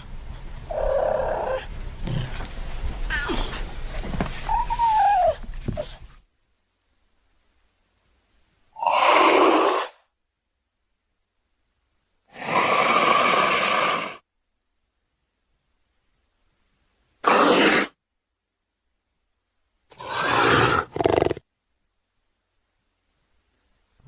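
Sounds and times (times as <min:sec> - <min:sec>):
cougar hissing exhalations: 0:12.3 - 0:14.2, 0:17.2 - 0:18.0.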